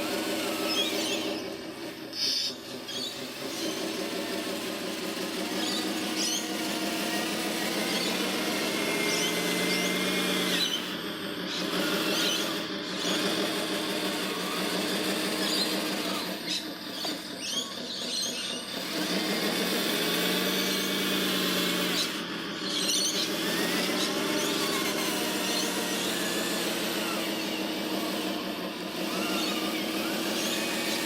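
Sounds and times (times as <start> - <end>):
small electric motors whining: 0.0 - 31.0
squeaks: 0.3 - 4.0, 5.4 - 13.6, 14.2 - 19.4, 21.9 - 28.4, 29.0 - 31.0.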